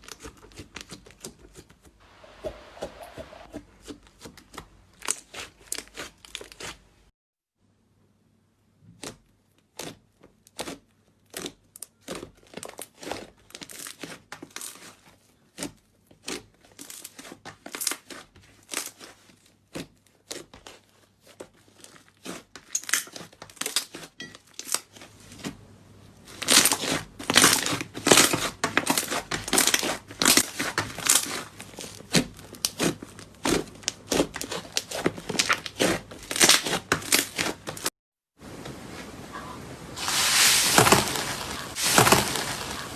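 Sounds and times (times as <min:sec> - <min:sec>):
slime crackling and popping: 0:40.0 - 0:42.9.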